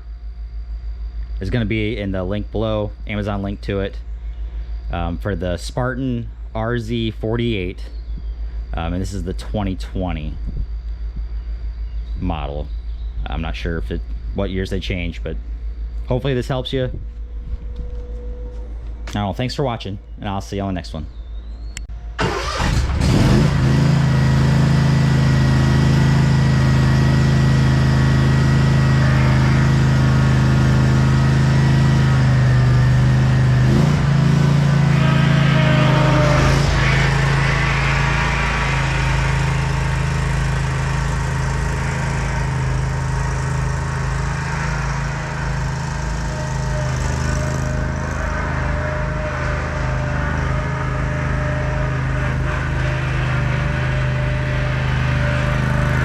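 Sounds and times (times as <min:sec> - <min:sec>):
mower engine running: 0:22.2 - 0:56.0.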